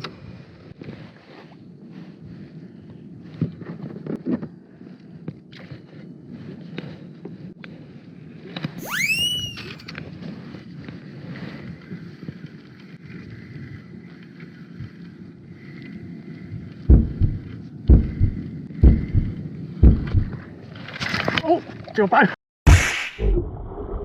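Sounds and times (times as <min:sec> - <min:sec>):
wind noise: 0:00.0 - 0:21.2
high whistle-like glide: 0:08.8 - 0:09.9
heavy low thumps: 0:16.9 - 0:20.4.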